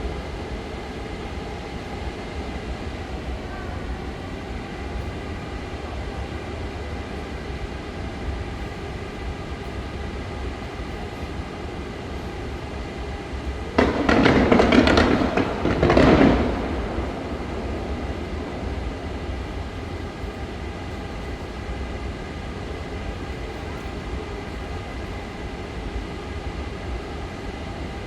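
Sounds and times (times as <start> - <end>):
fireworks low rumble: 11.7 - 24.4
fireworks rapid crackling: 13.8 - 18.4.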